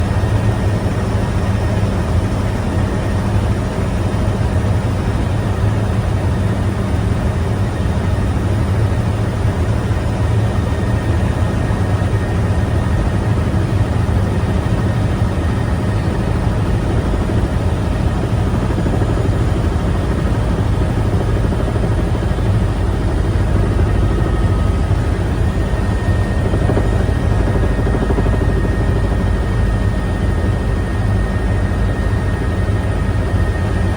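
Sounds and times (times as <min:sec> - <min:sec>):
helicopter rotor and engine noise: 0:00.0 - 0:33.9
faint steady whine: 0:09.0 - 0:33.9.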